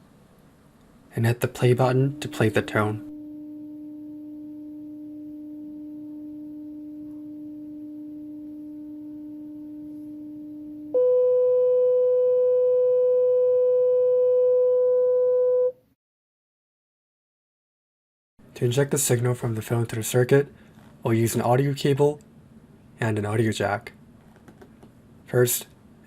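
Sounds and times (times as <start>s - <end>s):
steady test tone: 1.1s - 15.7s.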